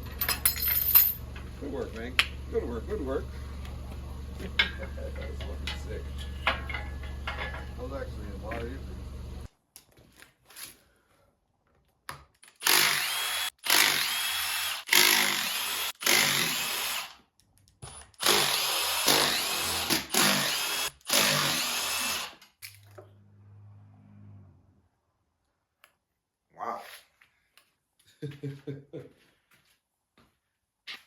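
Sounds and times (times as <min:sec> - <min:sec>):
power drill bursts: 0:12.5 - 0:17.2, 0:18.2 - 0:22.4.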